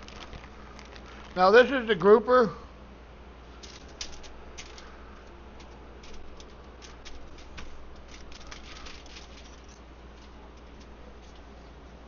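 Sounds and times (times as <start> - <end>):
paper towel crinkling: 0.0 - 1.9.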